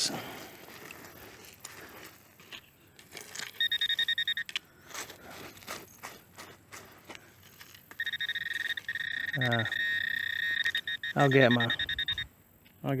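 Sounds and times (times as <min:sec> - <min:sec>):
metal detector high beeps: 0:03.5 - 0:04.6, 0:07.9 - 0:12.3.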